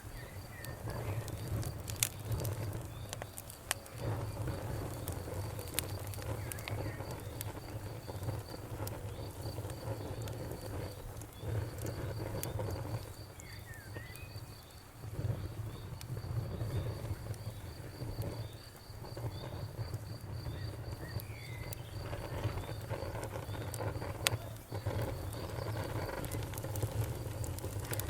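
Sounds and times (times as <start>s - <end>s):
campfire crackling and popping: 0.0s - 28.0s
crickets chirping: 0.0s - 28.0s
bird chirping: 13.3s - 14.6s.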